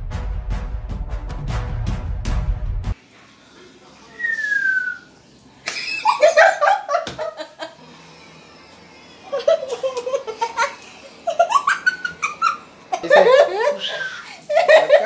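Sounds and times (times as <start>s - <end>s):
falling whistle-like tone: 4.2s - 5.1s.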